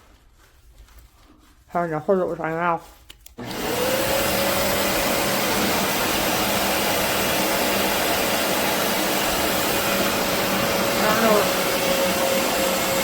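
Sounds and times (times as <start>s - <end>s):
carpet cleaner motor whine: 3.4s - 13.0s.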